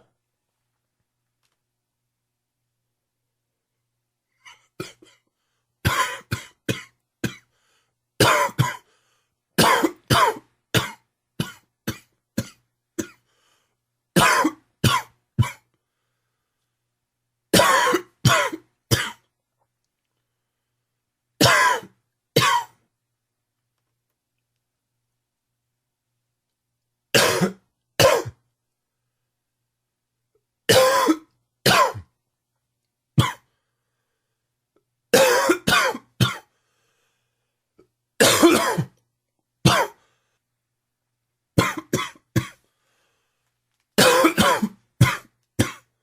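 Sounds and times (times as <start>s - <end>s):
man coughing harshly: 5.9s - 7.5s, 8.2s - 8.9s, 9.6s - 13.2s, 14.2s - 15.6s, 17.6s - 19.2s, 21.4s - 22.8s, 27.2s - 28.4s, 30.7s - 32.1s, 35.2s - 36.5s, 38.2s - 39.0s, 39.7s - 40.0s, 41.6s - 42.6s, 44.0s - 45.9s.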